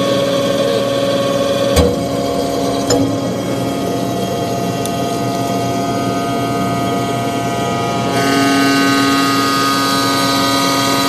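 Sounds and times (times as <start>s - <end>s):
factory machinery humming: 0.0s - 11.0s.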